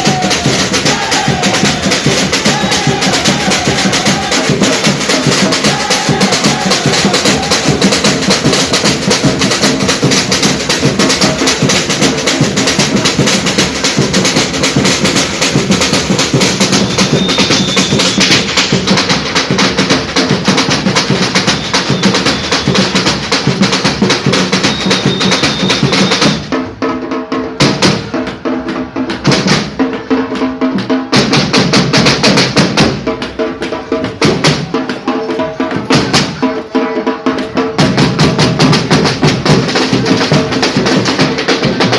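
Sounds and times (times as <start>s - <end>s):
samba drums playing: 0.0s - 41.9s.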